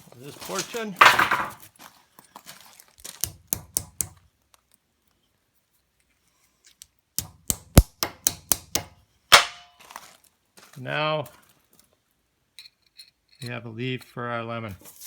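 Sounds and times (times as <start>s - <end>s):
hammer striking sheet metal: 7.2s - 9.7s.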